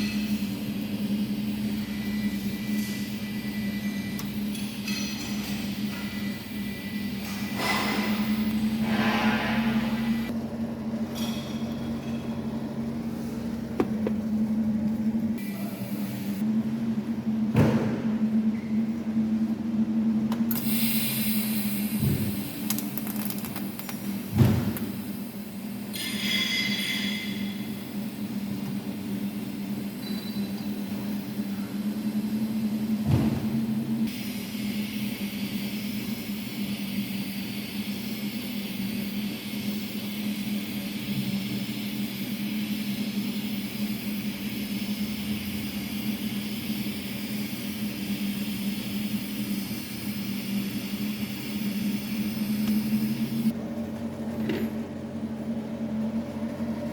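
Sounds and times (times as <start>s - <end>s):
welding arc hissing: 0.0s - 10.4s, 20.5s - 32.9s, 34.0s - 53.6s
steady low hum: 0.0s - 56.9s.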